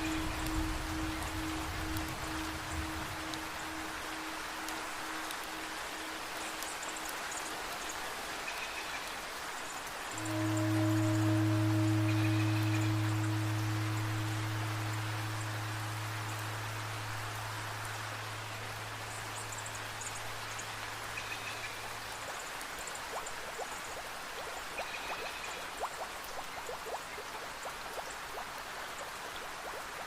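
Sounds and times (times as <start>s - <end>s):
struck bell humming: 0.0s - 7.0s, 10.1s - 18.4s
water drops ticking: 0.0s - 8.0s, 10.1s - 18.0s, 19.0s - 30.0s
steady rain: 0.0s - 30.0s.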